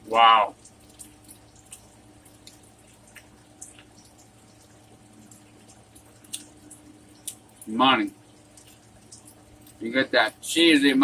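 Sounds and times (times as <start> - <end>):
person chewing crunchy food: 0.7 - 7.7, 8.4 - 9.8
wet mouth clicks: 6.1 - 7.5.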